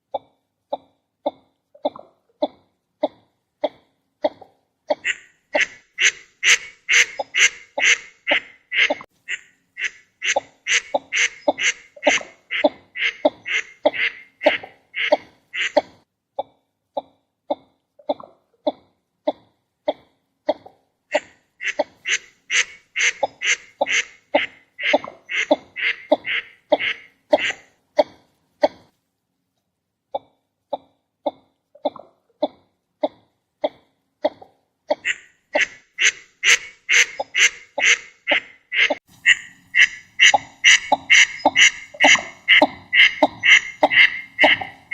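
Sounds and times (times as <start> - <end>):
duck calling harsh notes: 4.9 - 15.9, 21.1 - 28.1, 34.9 - 44.9.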